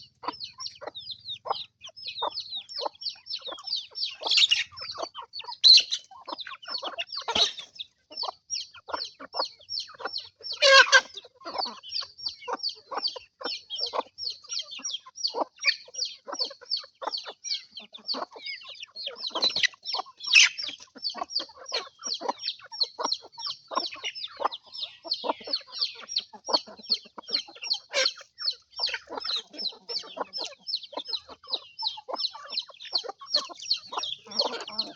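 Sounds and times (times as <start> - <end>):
chickens clucking: 0.0 - 34.9.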